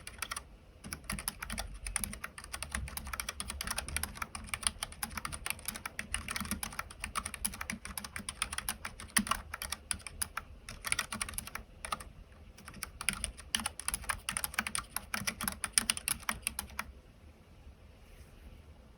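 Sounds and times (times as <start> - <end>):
keyboard typing clicks: 0.0 - 16.9.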